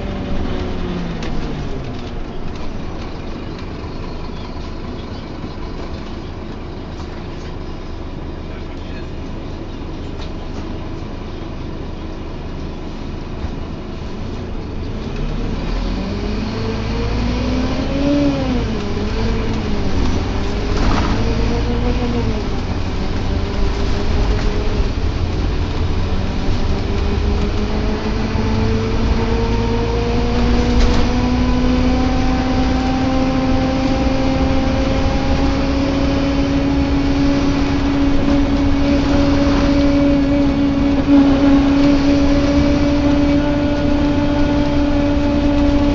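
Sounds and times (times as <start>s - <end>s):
bus engine and road rumble: 0.0s - 45.9s
groaning tone rising in pitch: 15.4s - 45.9s.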